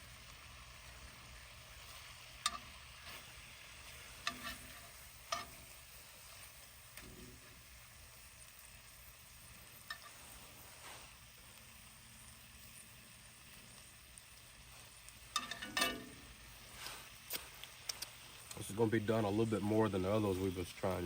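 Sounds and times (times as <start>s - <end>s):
meat sizzling in butter: 0.0s - 21.0s
metal utensil clinking on pan: 2.4s - 3.2s, 4.1s - 5.8s, 15.3s - 16.3s.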